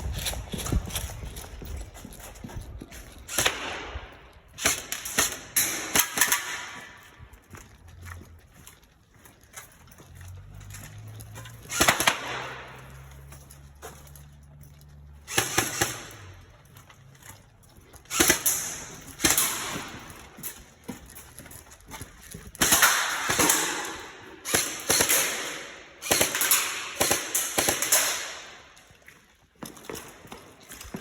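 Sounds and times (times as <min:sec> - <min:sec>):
airsoft guns firing rapid bursts: 0:11.7 - 0:12.8, 0:15.3 - 0:16.3, 0:18.1 - 0:20.0, 0:22.6 - 0:28.6.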